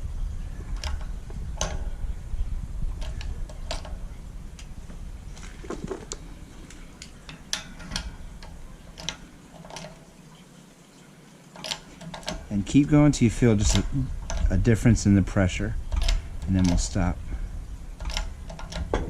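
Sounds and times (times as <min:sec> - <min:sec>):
low rumble: 0:00.0 - 0:06.9
light metallic clicks: 0:00.6 - 0:02.2, 0:15.7 - 0:17.4.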